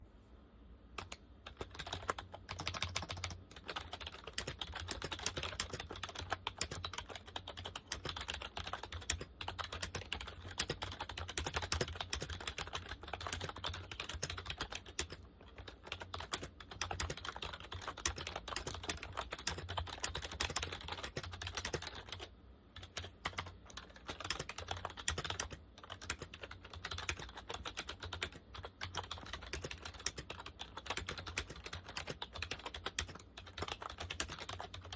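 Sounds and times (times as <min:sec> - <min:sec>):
fast typing on keyboard: 0:01.0 - 0:34.9.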